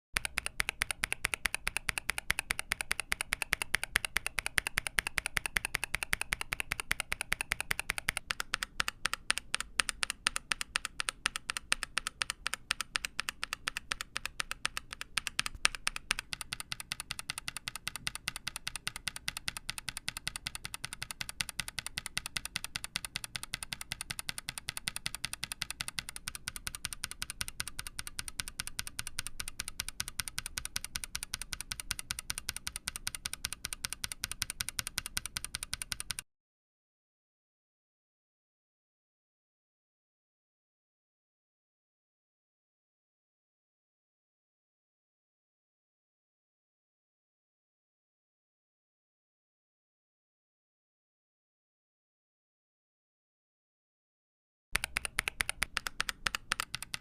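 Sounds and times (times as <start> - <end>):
mechanical keyboard typing: 0.2 - 36.2, 54.8 - 57.0.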